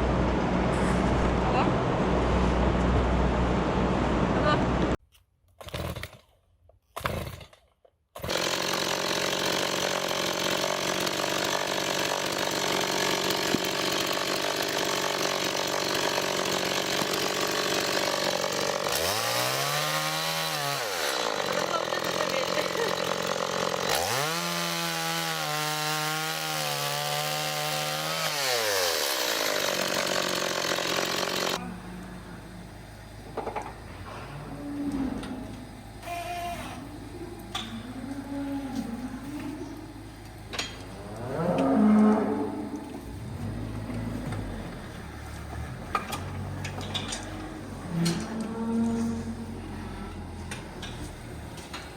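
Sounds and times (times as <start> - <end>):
chainsaw cutting wood: 5.6 - 6.4, 7.0 - 31.6.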